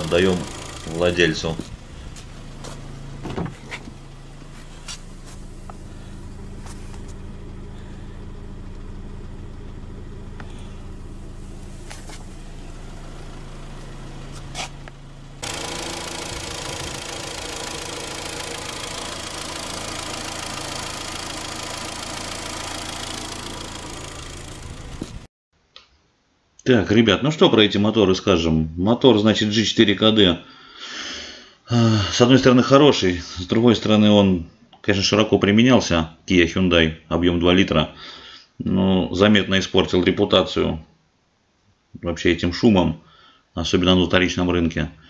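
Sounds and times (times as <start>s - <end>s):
fuel injector ticking: 0.0s - 2.8s, 14.5s - 25.3s
car engine idling: 0.0s - 25.3s.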